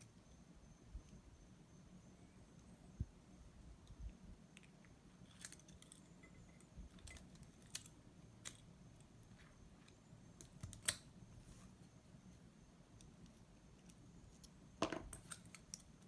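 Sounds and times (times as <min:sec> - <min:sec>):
small clicks and taps of lock parts: 0:09.8 - 0:11.1.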